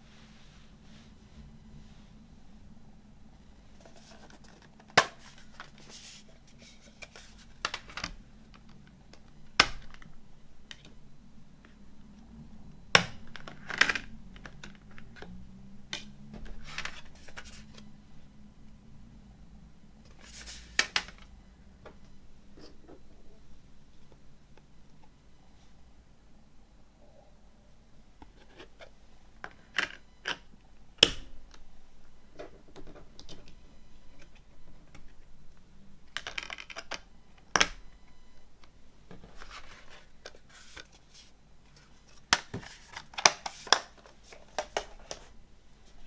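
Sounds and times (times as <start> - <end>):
packaging rustling and scraping: 3.6 - 8.0, 16.4 - 17.8, 20.1 - 21.2, 39.1 - 46.0.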